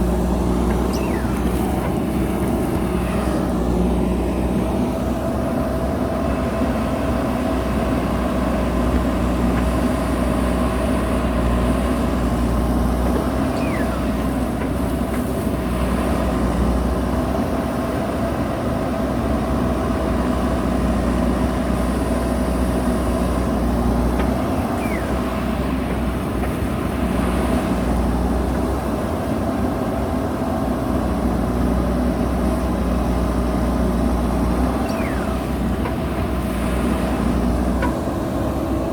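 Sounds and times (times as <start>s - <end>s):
diesel engine rumbling: 0.0s - 38.9s
faint falling squeaks: 0.6s - 3.4s, 13.2s - 14.4s, 34.5s - 36.0s.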